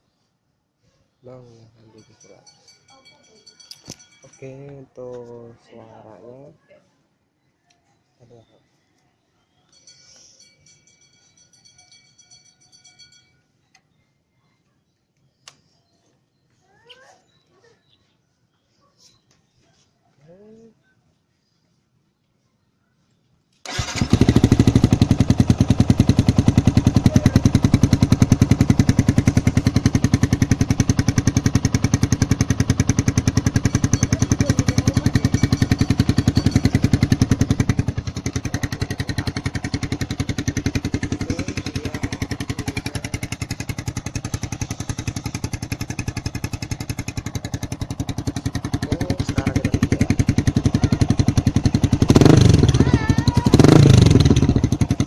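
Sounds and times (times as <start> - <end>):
motorcycle engine starting: 23.6 - 55.0
motorcycle engine idling popping: 23.7 - 55.0.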